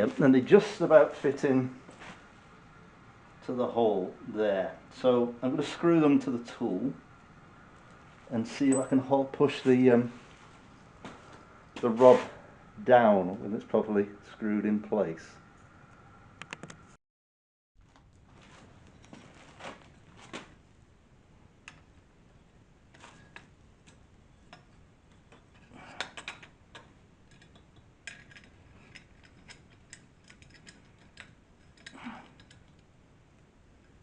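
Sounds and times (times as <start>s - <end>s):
metallic clicks of bolts: 26.0s - 32.9s.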